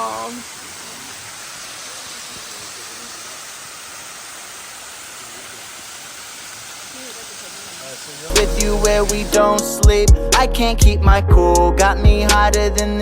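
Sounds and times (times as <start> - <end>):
pouring rain: 0.0 - 10.2
waterfall rushing: 0.0 - 10.8.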